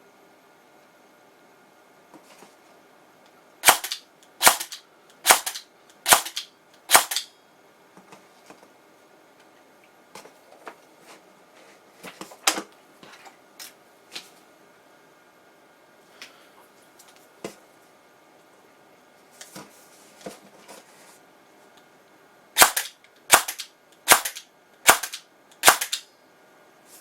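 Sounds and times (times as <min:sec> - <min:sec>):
airsoft gun shots: 0:03.6 - 0:07.3, 0:22.6 - 0:26.0.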